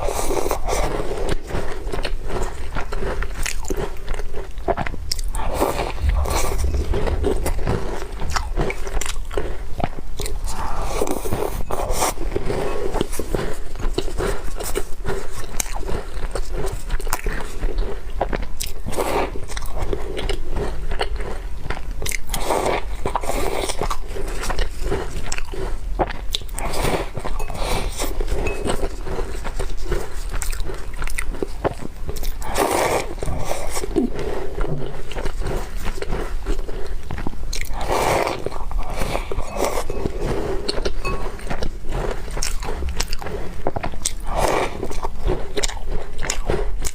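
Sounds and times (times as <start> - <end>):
chewing crunchy cookies: 0.0 - 46.9
steady low hum: 4.5 - 13.8, 27.2 - 30.6, 39.2 - 46.3.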